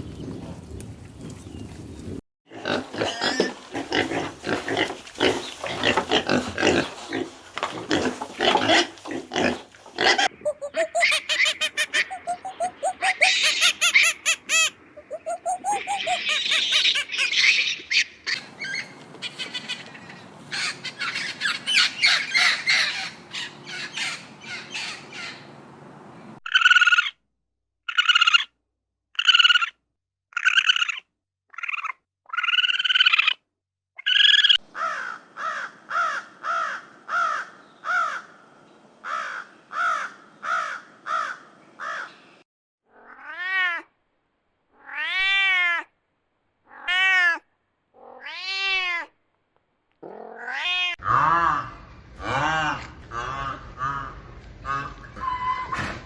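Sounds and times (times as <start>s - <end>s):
birds squawking: 7.9s - 19.9s, 20.5s - 25.4s.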